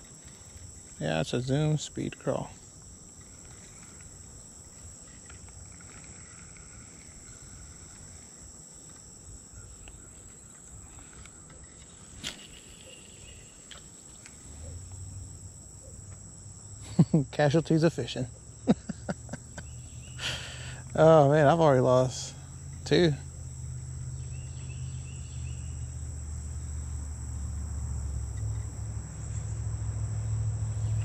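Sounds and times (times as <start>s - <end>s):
insects chirring: 0.0s - 31.0s.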